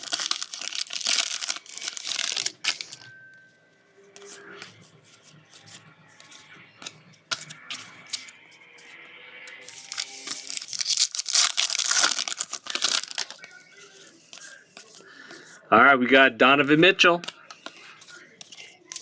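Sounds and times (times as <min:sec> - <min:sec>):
cards being handled: 0:00.0 - 0:03.1, 0:04.2 - 0:08.4, 0:09.6 - 0:15.6, 0:17.1 - 0:19.0
foil wrapper crinkling and tearing: 0:00.0 - 0:03.1, 0:09.7 - 0:13.6
faint background music: 0:00.0 - 0:19.0.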